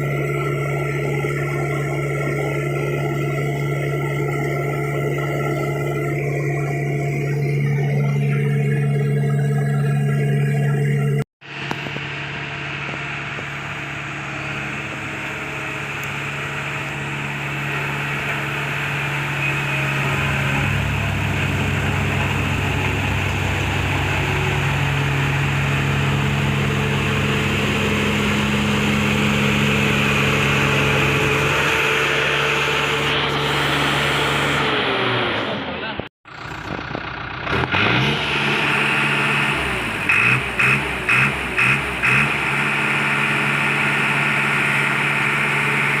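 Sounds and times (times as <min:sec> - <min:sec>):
deep pulsing note: 0:00.0 - 0:34.8
road roller diesel engine running: 0:00.0 - 0:46.0.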